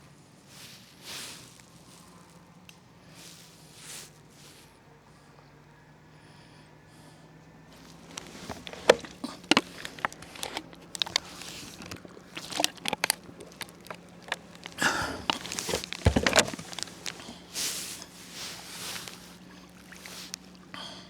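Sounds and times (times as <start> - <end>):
paddle splashing water: 7.8 - 20.7.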